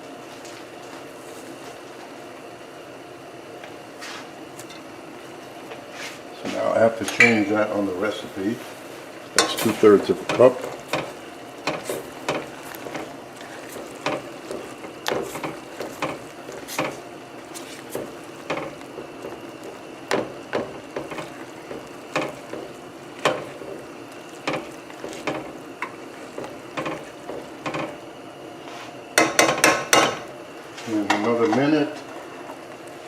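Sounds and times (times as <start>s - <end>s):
sauce sizzling: 6.7s - 30.8s, 31.8s - 33.0s
utensil knocking against pan: 18.0s - 19.4s, 20.1s - 23.7s, 24.4s - 28.0s, 29.2s - 30.3s.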